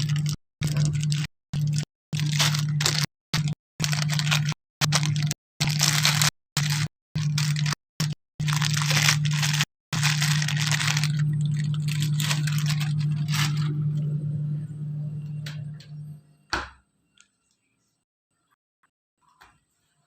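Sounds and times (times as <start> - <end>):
steady low hum: 8.5 - 16.5.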